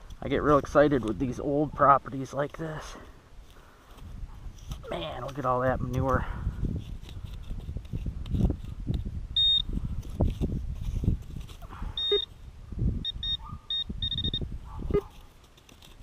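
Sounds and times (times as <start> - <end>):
metal detector beeps: 9.4 - 9.7, 12.0 - 12.3, 13.0 - 15.1
thuds and scuffs on dirt: 9.9 - 11.7.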